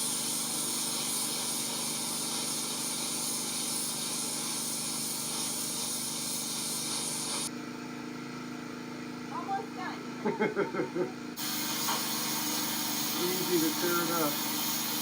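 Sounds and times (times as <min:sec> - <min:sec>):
pressure washer engine running: 0:00.0 - 0:07.5, 0:11.3 - 0:15.0
water jet spraying hiss: 0:00.0 - 0:07.5, 0:11.4 - 0:15.0.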